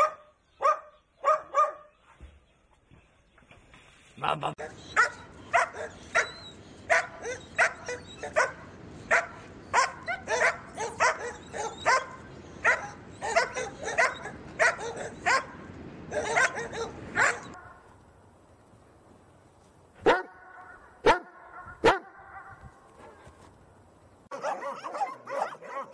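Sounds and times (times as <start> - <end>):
dog barking: 0.0 - 1.9, 4.6 - 17.6, 20.0 - 23.2, 24.3 - 25.9.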